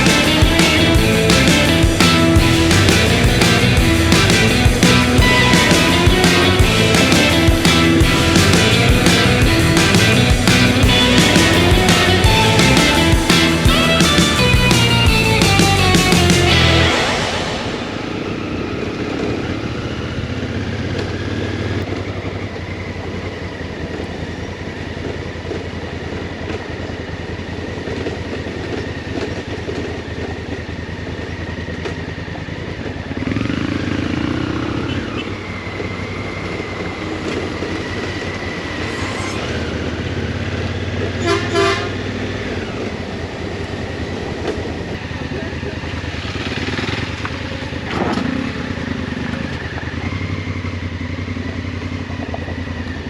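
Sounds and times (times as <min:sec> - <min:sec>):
horn toot: 0:00.0 - 0:19.6, 0:41.2 - 0:42.1
motorcycle engine and wind rumble: 0:16.5 - 0:38.8, 0:39.4 - 0:53.0.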